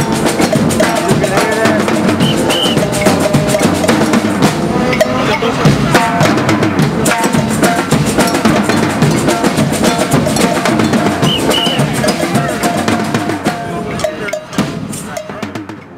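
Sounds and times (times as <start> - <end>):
drum corps playing: 0.0 - 15.9
sustained pitched notes: 0.8 - 6.4.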